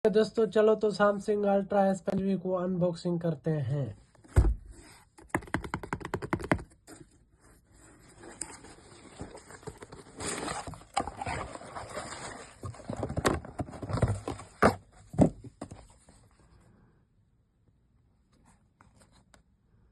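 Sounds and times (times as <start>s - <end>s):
cardboard rubbing and sliding: 6.3s - 16.1s.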